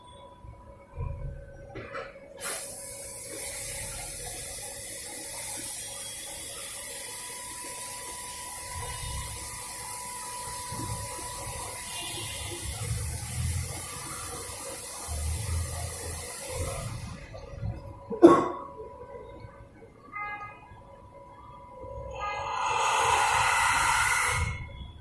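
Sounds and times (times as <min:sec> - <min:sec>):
coolant hissing: 0:02.4 - 0:17.7, 0:22.1 - 0:24.9
machine whine: 0:02.9 - 0:18.3, 0:21.0 - 0:25.0.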